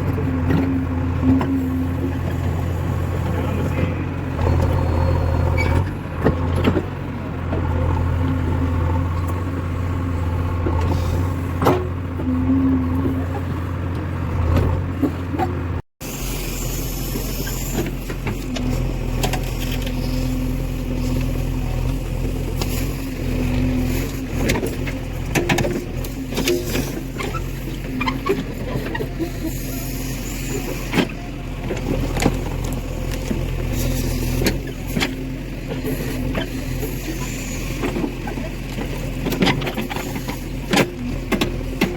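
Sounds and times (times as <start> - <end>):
diesel engine running: 0.0 - 41.9.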